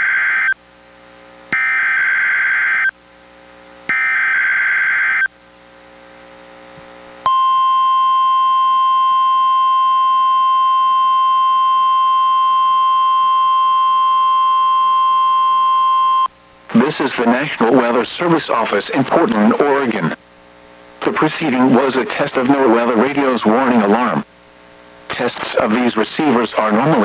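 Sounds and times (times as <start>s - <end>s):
single-pitch warning alarm tone: 7.2s - 16.3s.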